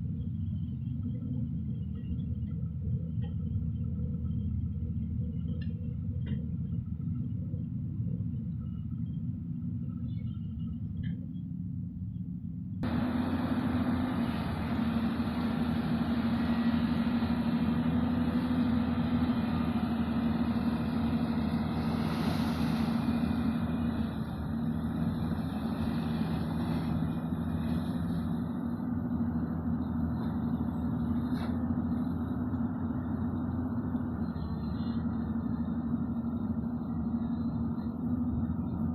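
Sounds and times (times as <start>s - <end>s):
earthmover diesel engine running: 0.0s - 38.9s.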